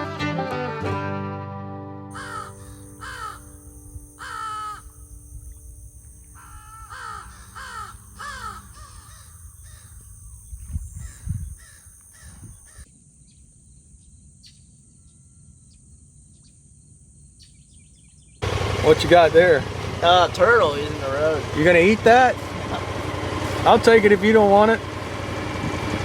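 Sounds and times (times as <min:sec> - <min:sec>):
crows cawing: 0:02.1 - 0:05.1, 0:06.4 - 0:10.0, 0:11.0 - 0:12.9.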